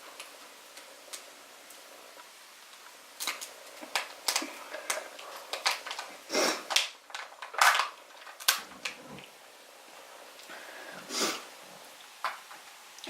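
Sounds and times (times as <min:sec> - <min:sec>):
small objects clicking and tapping: 0:02.7 - 0:06.1, 0:06.7 - 0:09.1, 0:12.2 - 0:13.0.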